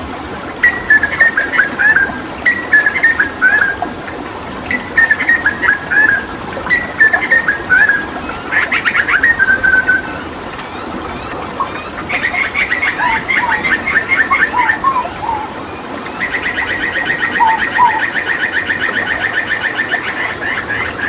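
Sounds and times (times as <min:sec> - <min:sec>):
running water: 0:00.0 - 0:21.0
bird singing fluty notes: 0:00.6 - 0:03.8, 0:04.7 - 0:15.6, 0:16.2 - 0:21.0.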